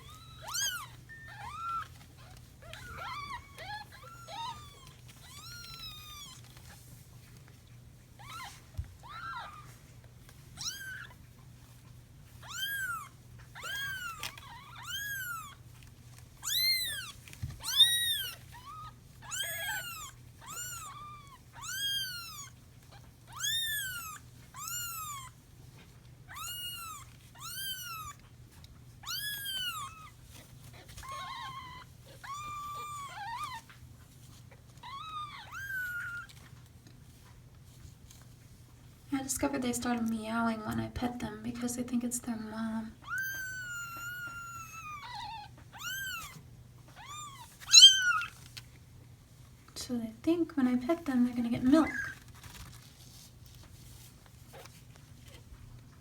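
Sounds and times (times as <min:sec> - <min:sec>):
kittens meowing: 0:00.0 - 0:06.5, 0:08.2 - 0:09.7, 0:10.6 - 0:11.2, 0:12.4 - 0:15.6, 0:16.4 - 0:25.4, 0:26.3 - 0:28.2, 0:29.0 - 0:30.2, 0:30.8 - 0:33.7, 0:34.8 - 0:36.4, 0:43.0 - 0:48.4.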